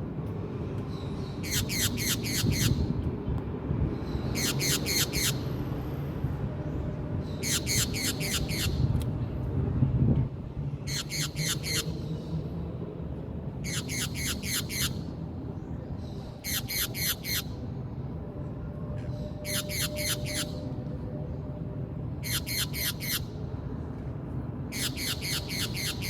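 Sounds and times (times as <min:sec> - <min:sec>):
parakeet squawking: 0:01.4 - 0:02.9, 0:04.4 - 0:05.4, 0:07.4 - 0:08.8, 0:10.9 - 0:12.0, 0:13.6 - 0:15.0, 0:16.4 - 0:17.6, 0:19.4 - 0:20.6, 0:22.2 - 0:23.4, 0:24.7 - 0:26.0.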